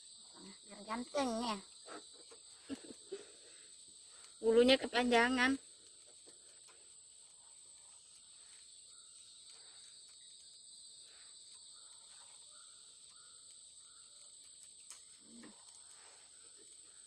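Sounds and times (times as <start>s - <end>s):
forest insects droning: 0.0s - 17.0s
faint clicks: 11.5s - 17.0s.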